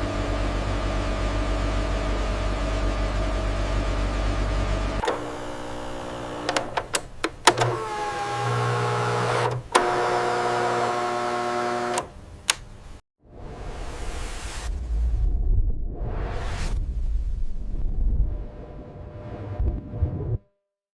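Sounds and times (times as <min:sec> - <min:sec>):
electric motor humming: 0:05.0 - 0:12.1
sharp clicks: 0:11.9 - 0:12.7.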